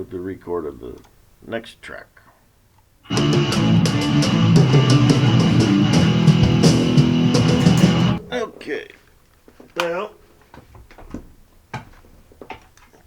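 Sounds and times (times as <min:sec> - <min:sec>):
rock music with guitar and drums: 0:03.1 - 0:08.3.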